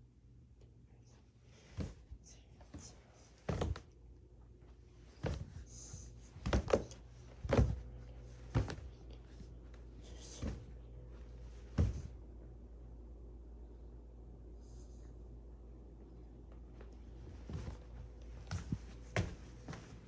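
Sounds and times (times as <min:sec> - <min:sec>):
low steady hum: 0:00.0 - 0:20.0
dull thuds and knocks: 0:03.5 - 0:03.8, 0:05.2 - 0:05.6, 0:06.4 - 0:07.9, 0:08.5 - 0:08.9, 0:11.7 - 0:12.2.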